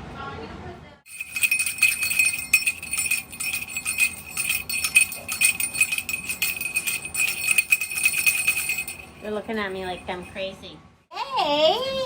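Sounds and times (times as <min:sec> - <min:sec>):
small bells jingling: 0:01.1 - 0:10.6.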